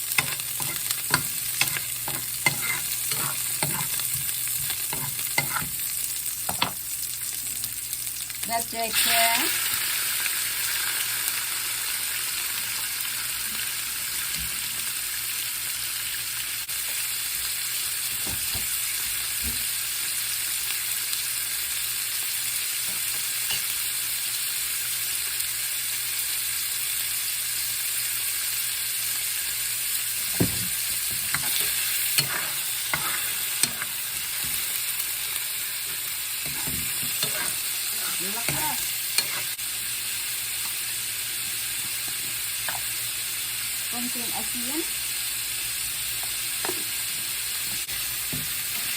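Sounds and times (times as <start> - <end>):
chicken sizzling in hot oil: 0.0 - 48.9
utensil scraping and clinking pan: 0.1 - 5.8, 31.1 - 34.7, 36.4 - 39.6.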